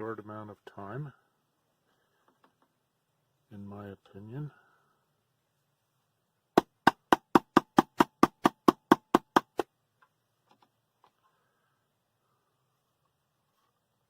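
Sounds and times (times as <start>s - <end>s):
sharp knocks: 6.6s - 9.7s.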